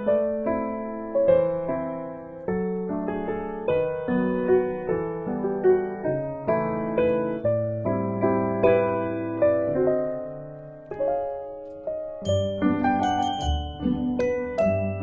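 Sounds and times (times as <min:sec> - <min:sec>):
soft slow piano melody: 0:00.0 - 0:15.0.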